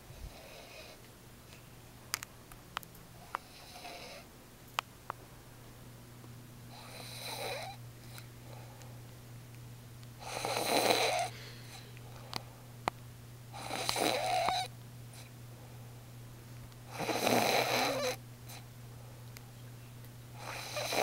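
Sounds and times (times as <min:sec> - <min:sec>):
woman snoring: 0:03.4 - 0:04.2, 0:06.7 - 0:07.8, 0:10.2 - 0:11.6, 0:13.6 - 0:14.7, 0:16.9 - 0:18.2, 0:20.4 - 0:21.0.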